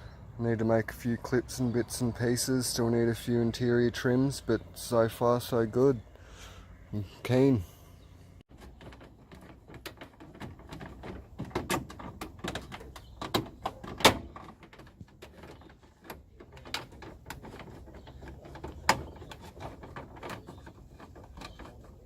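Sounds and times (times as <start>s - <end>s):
objects being handled: 8.5s - 22.0s.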